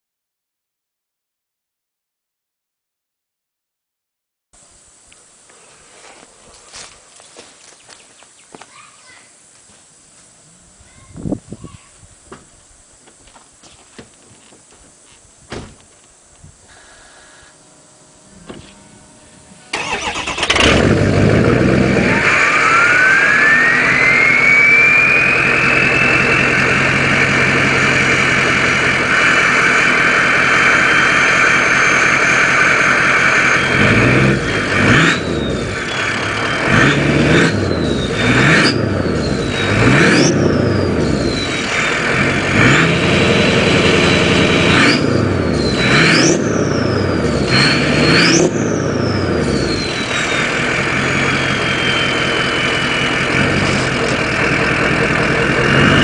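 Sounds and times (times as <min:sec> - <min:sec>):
diesel engine revving: 0:17.6 - 0:56.0
turbo whistle: 0:21.9 - 0:27.6, 0:31.4 - 0:41.9, 0:43.4 - 0:53.3.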